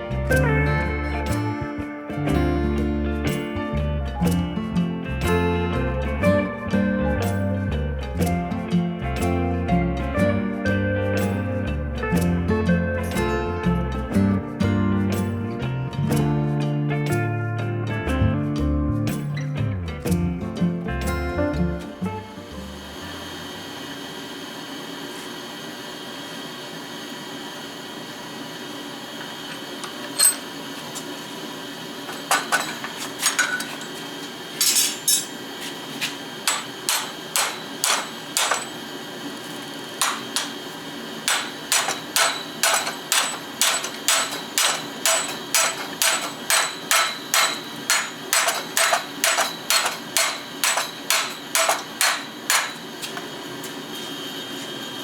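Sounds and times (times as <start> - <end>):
constant background hum: 0.0 - 23.8, 29.1 - 55.0
hammer striking spike on anvil: 36.4 - 38.8, 40.0 - 40.6, 41.3 - 53.2.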